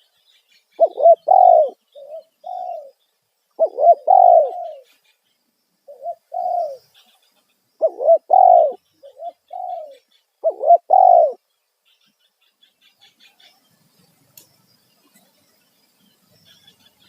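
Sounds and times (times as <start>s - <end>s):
dove cooing: 0.8s - 3.0s, 3.6s - 4.9s, 5.9s - 7.1s, 7.8s - 11.4s.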